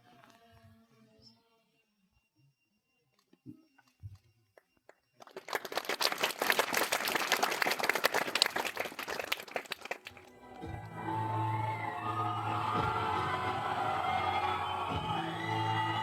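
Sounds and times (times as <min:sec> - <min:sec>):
audience applauding: 0:05.2 - 0:16.0.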